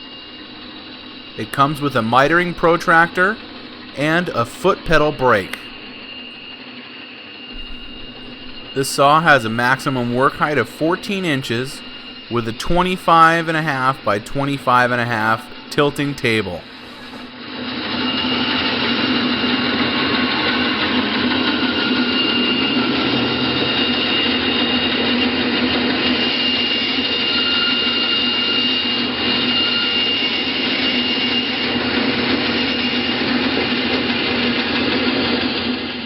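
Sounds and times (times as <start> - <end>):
band saw humming: 0.0 - 6.5, 7.6 - 17.3
thin high whine: 0.0 - 36.0.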